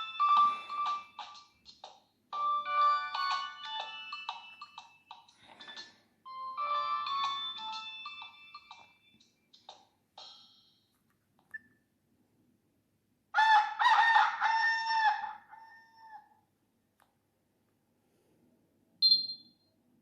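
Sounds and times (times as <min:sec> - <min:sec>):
rooster crowing ringtone: 0:00.0 - 0:01.4, 0:02.4 - 0:04.8, 0:05.6 - 0:08.8, 0:13.4 - 0:16.3
electronic ringtone melody: 0:00.0 - 0:01.5, 0:02.3 - 0:10.8.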